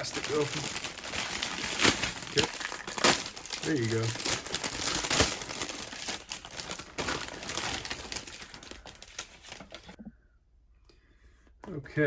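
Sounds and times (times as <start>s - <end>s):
plastic bags crinkling: 0.0s - 10.0s.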